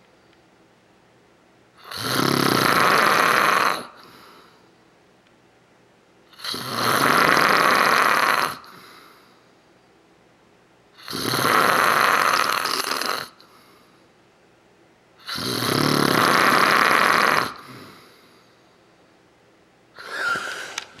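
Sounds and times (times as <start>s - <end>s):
man snoring loudly: 1.8s - 3.9s, 6.4s - 8.7s, 11.0s - 13.3s, 15.3s - 18.0s, 20.0s - 21.0s.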